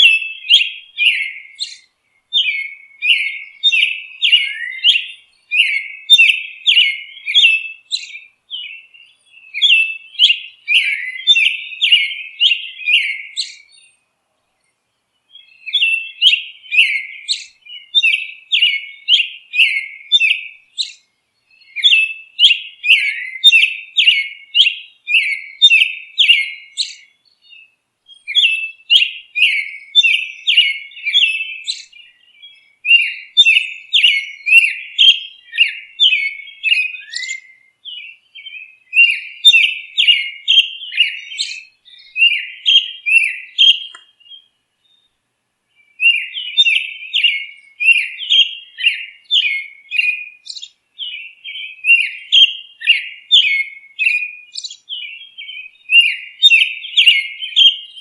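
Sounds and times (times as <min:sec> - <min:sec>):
songbird chirping: 0:00.0 - 0:58.0.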